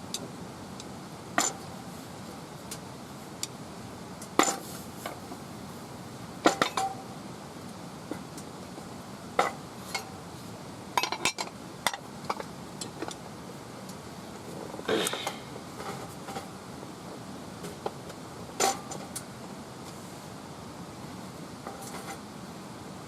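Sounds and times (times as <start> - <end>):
utensils clinking on metal cookware: 11.0 - 12.4, 18.6 - 19.2.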